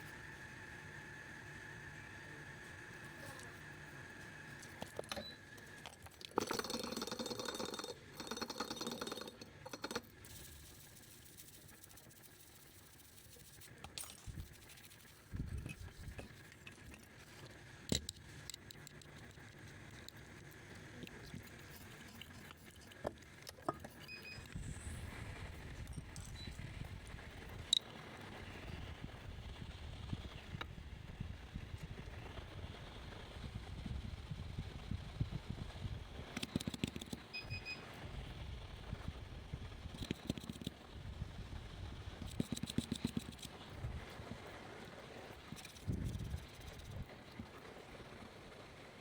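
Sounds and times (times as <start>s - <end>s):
tools and parts clicking: 6.0s - 10.4s, 17.9s - 20.2s, 36.4s - 37.3s
low steady rumble: 13.1s - 36.4s, 40.8s - 42.4s
light clicks and taps of tools: 15.6s - 20.2s, 36.4s - 37.3s.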